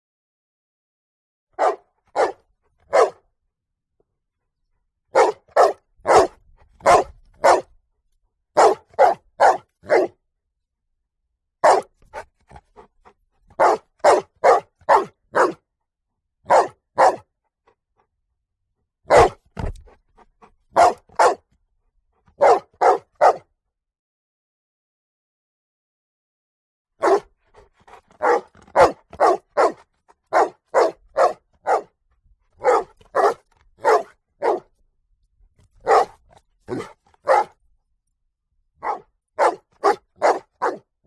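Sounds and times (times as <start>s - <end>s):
dog barking: 1.6s - 3.2s, 5.1s - 7.8s, 8.6s - 10.2s, 11.6s - 12.3s, 13.5s - 15.6s, 16.4s - 17.3s, 19.1s - 19.7s, 20.7s - 21.5s, 22.4s - 23.5s, 27.0s - 32.0s, 32.6s - 34.8s, 35.8s - 37.6s, 38.8s - 40.9s.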